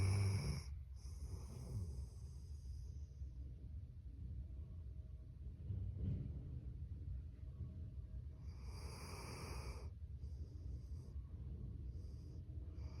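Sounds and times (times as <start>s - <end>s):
dog snoring: 0.0s - 2.7s, 8.4s - 11.1s
low steady rumble: 0.0s - 13.0s.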